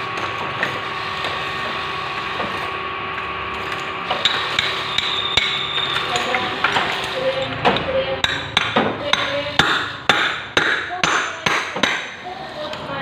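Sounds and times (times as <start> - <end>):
hand tools clicking and knocking: 3.7 - 12.8.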